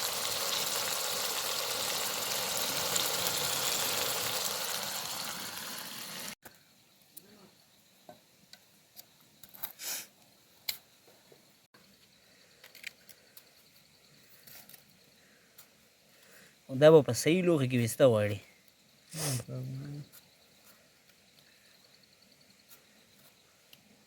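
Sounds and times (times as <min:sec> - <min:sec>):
faint scattered small sounds: 0:06.4 - 0:16.7
dense hiss: 0:09.6 - 0:10.2, 0:18.4 - 0:19.6.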